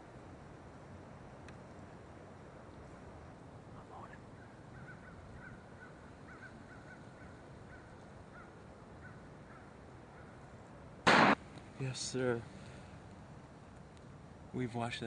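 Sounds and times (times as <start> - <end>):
background hiss: 0.0 - 15.0
distant bird calls: 3.9 - 11.6.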